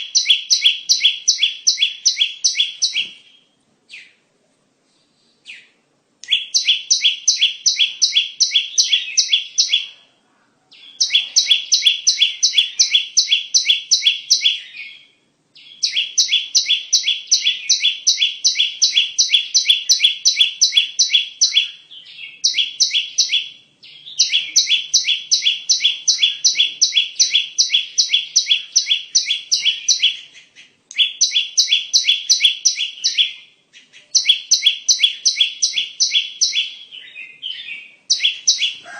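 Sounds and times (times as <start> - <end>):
bird song with sharp repeated notes: 0.0 - 4.2, 5.3 - 10.0, 10.7 - 38.9.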